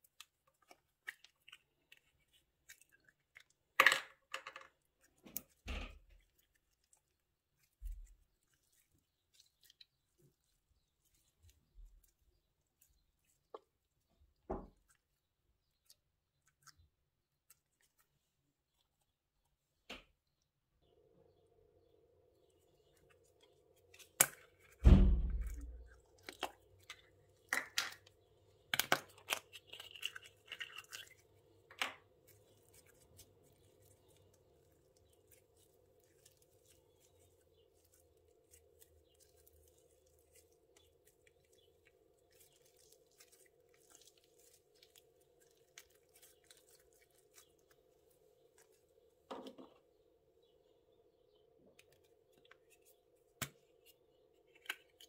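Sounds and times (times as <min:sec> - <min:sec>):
soft thump: 0:24.8 - 0:25.6.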